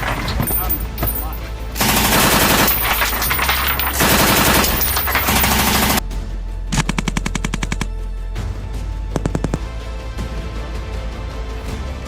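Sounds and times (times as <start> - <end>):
machine gun firing bursts: 0.0 - 6.0.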